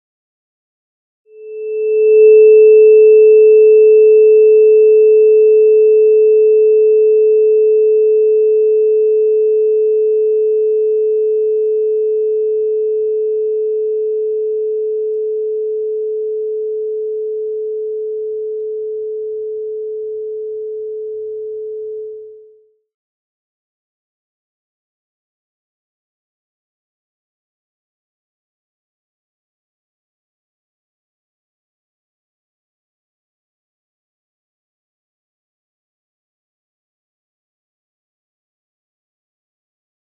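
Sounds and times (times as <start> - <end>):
pure ringing tone: 1.3 - 22.9.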